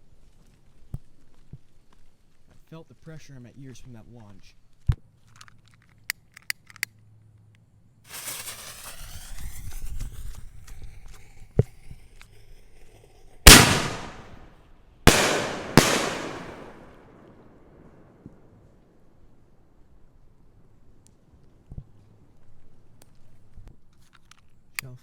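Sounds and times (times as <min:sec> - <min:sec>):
sharp firework crack: 0:08.1 - 0:12.3, 0:13.4 - 0:14.5, 0:15.1 - 0:18.0
firework crackling and fizzing: 0:08.1 - 0:14.4, 0:15.1 - 0:17.0
firework booms echoing: 0:13.5 - 0:14.4, 0:15.1 - 0:17.9.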